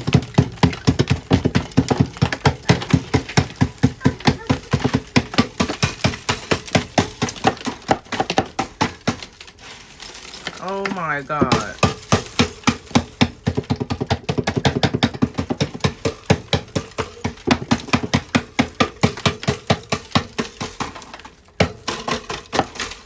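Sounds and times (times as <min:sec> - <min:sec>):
strikes chipping at ice: 0:10.9 - 0:23.0.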